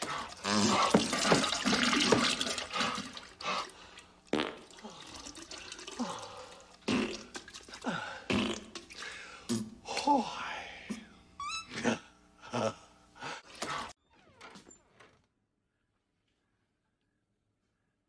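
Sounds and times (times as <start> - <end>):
wet fart-like bursts: 0.4 - 3.0, 4.3 - 5.4, 6.8 - 7.7, 8.3 - 9.7.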